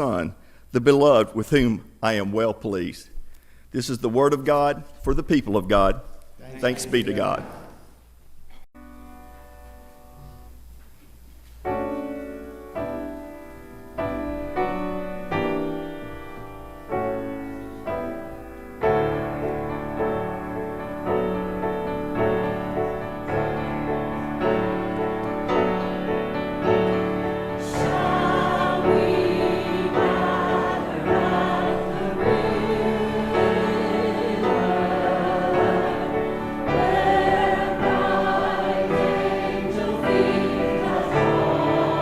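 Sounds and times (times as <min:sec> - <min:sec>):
piano playing slow chords: 0:08.7 - 0:10.8, 0:11.6 - 0:42.0
choir singing: 0:19.0 - 0:42.0.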